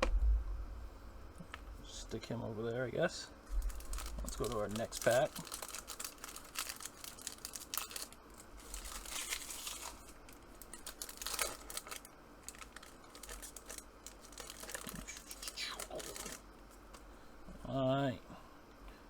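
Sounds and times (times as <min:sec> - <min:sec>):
plastic wrapper tearing and crinkling: 0:03.5 - 0:16.4.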